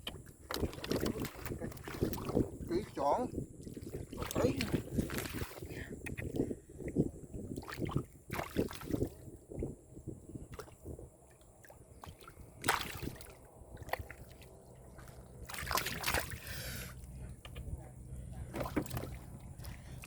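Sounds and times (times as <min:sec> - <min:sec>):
hands splashing in muddy water: 0:00.5 - 0:02.5, 0:03.6 - 0:05.8, 0:07.6 - 0:09.2, 0:12.0 - 0:16.8.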